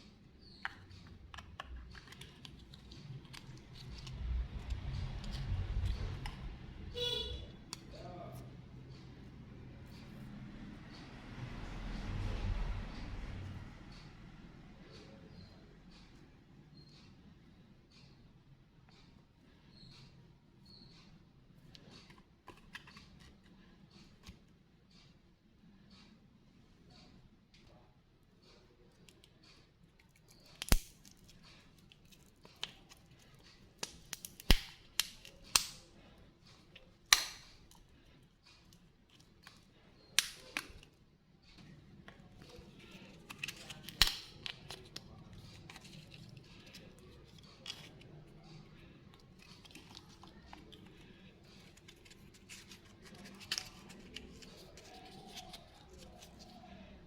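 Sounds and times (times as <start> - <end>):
plastic packaging clicks and snaps: 30.1 - 35.9, 37.1 - 37.8, 40.2 - 40.9, 42.4 - 48.2
candy packaging crinkling: 49.1 - 56.6.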